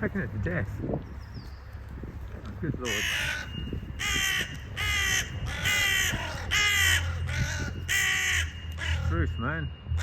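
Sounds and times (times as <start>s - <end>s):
crows cawing: 2.8s - 9.2s.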